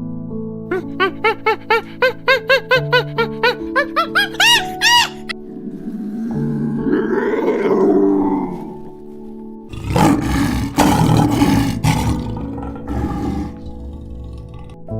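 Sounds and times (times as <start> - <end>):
background music: 0.0 - 14.9
large animal deep rough calls: 5.3 - 9.1, 9.7 - 14.9.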